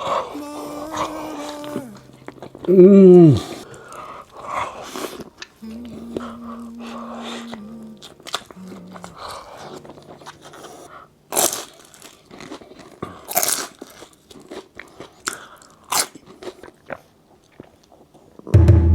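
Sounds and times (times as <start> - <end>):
quiet chewing: 0.0 - 18.4
loud crunching bites: 11.3 - 17.0.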